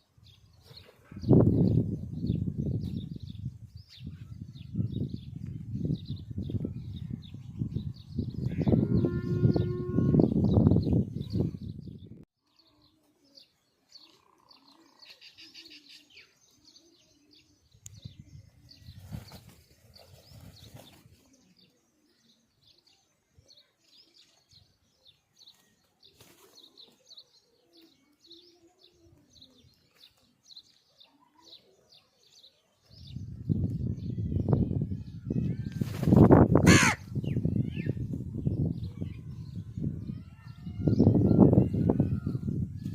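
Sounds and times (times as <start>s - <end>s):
small birds chirping: 0.0s - 42.9s
crows cawing: 36.6s - 37.0s.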